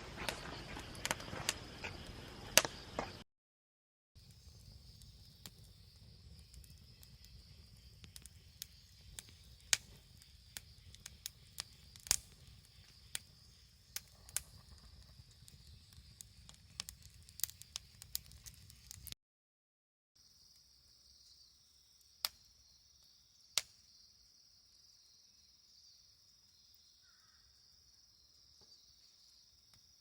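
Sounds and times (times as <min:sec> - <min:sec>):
campfire crackling and popping: 0:00.0 - 0:03.2, 0:04.2 - 0:19.2.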